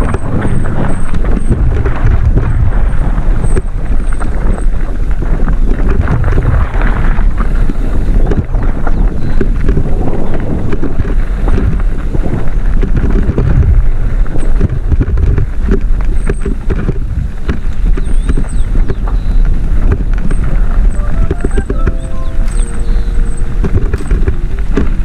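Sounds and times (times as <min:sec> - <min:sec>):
bike rattling and knocking: 0:00.0 - 0:21.0
tyres rumbling over dirt: 0:00.0 - 0:21.1, 0:22.6 - 0:25.0
wind buffeting microphone: 0:00.0 - 0:25.0
rising music notes: 0:21.0 - 0:24.8.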